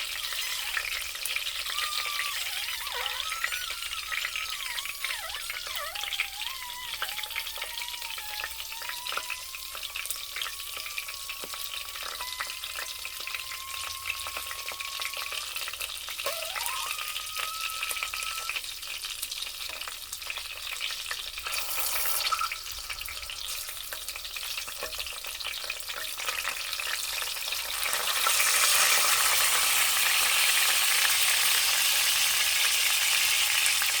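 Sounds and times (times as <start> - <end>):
thin whistling squeals: 0.0 - 18.7, 21.4 - 24.1, 26.9 - 31.0
sausages sizzling in a pan: 0.0 - 34.0.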